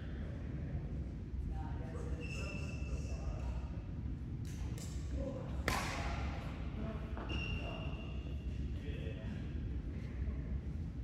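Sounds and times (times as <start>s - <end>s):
steady low hum: 0.0s - 11.0s
shoe squeaks: 2.2s - 3.3s, 7.2s - 8.3s.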